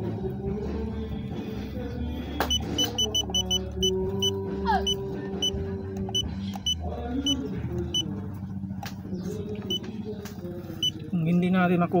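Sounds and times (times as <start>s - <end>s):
short high electronic beeps: 2.5s - 5.0s.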